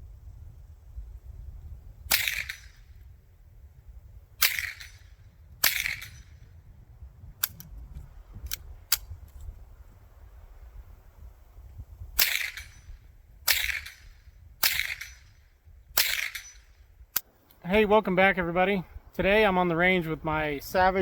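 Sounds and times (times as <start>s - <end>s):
suppressed rifle shots: 2.1s - 2.9s, 4.4s - 6.4s, 12.2s - 15.4s, 16.0s - 17.3s.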